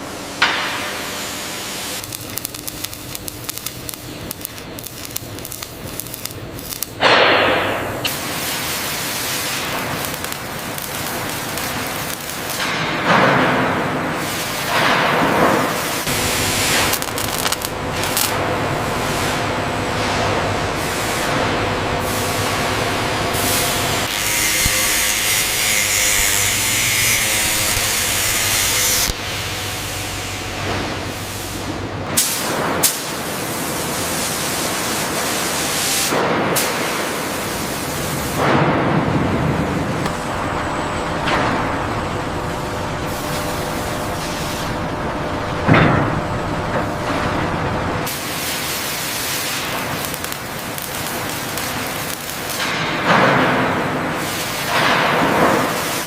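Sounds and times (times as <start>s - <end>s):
factory machinery humming: 0.0s - 56.0s
loud hiss: 0.8s - 38.5s
sputtering crackle of ticks: 2.0s - 7.0s, 16.8s - 18.3s.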